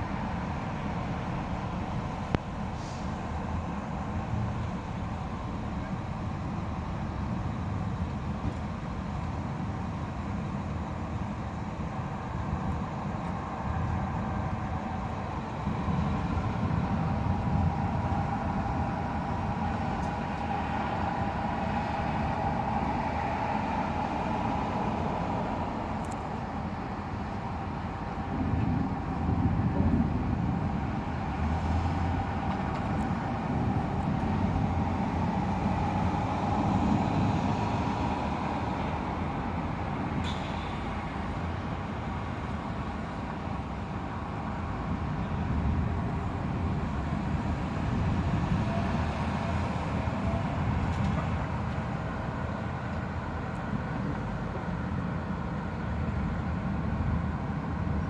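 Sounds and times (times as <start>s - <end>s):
city noise hum: 0.0s - 58.0s
distant rolling thunder: 26.8s - 42.4s.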